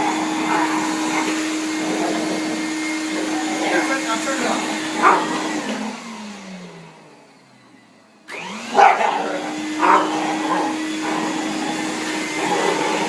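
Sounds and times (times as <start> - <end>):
dog barking: 0.0 - 2.4, 4.9 - 5.8, 8.6 - 13.0
vacuum cleaner motor whine: 0.0 - 13.0.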